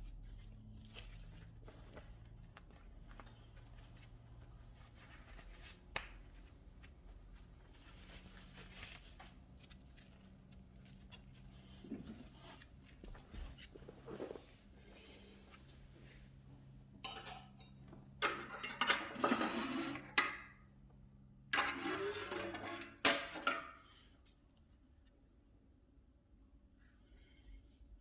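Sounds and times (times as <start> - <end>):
soft rustles: 0.0 - 16.7.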